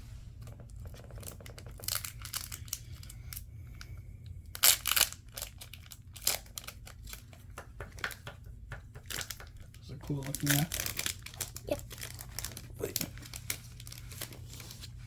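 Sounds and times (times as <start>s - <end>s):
foil wrapper tearing and crinkling: 0.8s - 3.5s, 4.5s - 7.4s, 10.1s - 15.0s.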